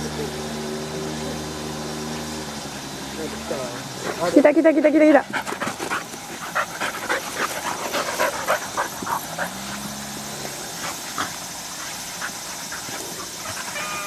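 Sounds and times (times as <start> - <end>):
dog panting: 3.5 - 14.0.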